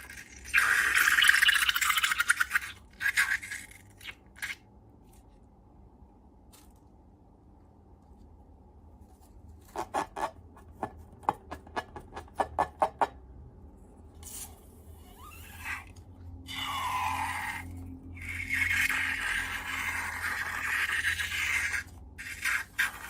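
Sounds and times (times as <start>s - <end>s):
slime scraping and rubbing: 9.0s - 10.5s, 16.6s - 23.0s.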